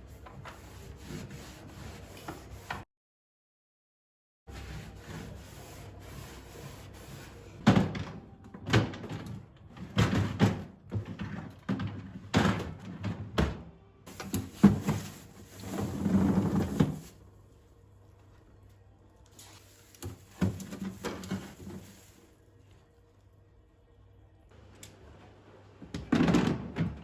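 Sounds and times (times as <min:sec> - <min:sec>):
household knocks and clatters: 0:09.8 - 0:17.1
rustling and scraping: 0:14.1 - 0:17.3, 0:19.4 - 0:22.4.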